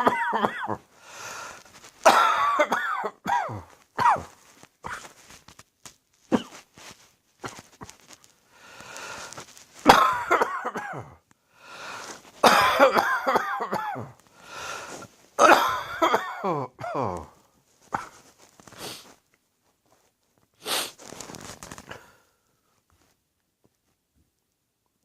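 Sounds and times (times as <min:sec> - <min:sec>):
person coughing hard: 0:00.0 - 0:00.9, 0:02.0 - 0:05.2, 0:06.3 - 0:06.6, 0:09.8 - 0:11.2, 0:12.4 - 0:14.2, 0:15.4 - 0:18.2
breaths drawn: 0:03.7 - 0:09.9, 0:11.6 - 0:12.4, 0:14.2 - 0:15.3, 0:20.6 - 0:22.2.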